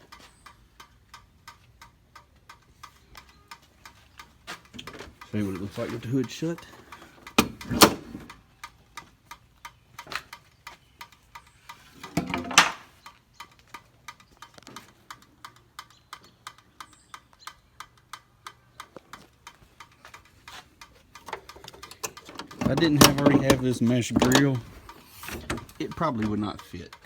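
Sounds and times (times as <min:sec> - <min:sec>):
rapid ticking: 0:00.0 - 0:07.7, 0:13.0 - 0:27.0
truck hood shutting: 0:07.4 - 0:08.3, 0:22.4 - 0:25.8.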